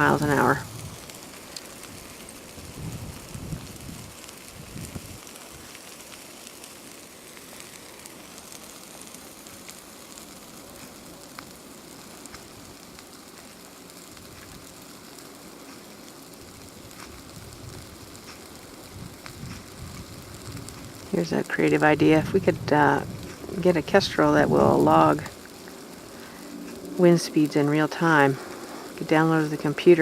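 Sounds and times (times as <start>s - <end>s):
fire hissing and crackling: 0.0s - 30.0s.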